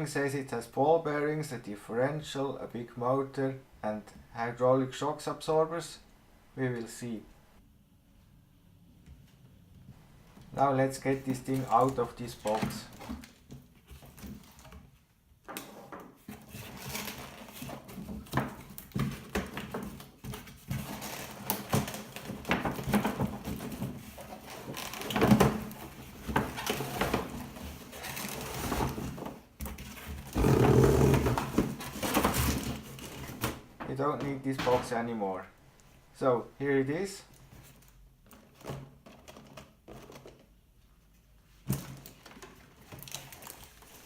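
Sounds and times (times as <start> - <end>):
cardboard box rustling: 30.2 - 33.2.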